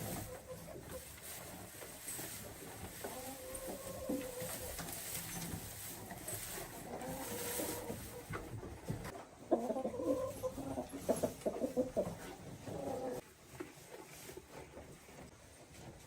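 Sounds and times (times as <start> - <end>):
chickens clucking: 0.0 - 15.8.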